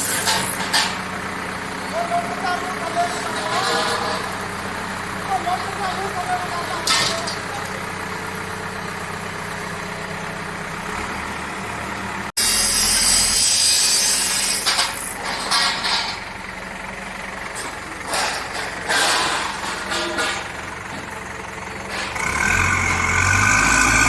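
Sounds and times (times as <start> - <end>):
diesel engine running: 0.0 - 13.6, 14.2 - 24.0.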